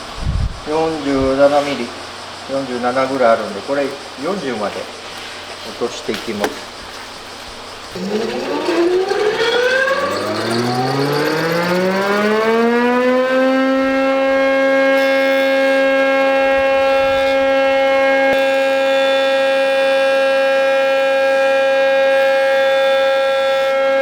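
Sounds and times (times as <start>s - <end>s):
electric motor spinning up: 6.4s - 24.0s.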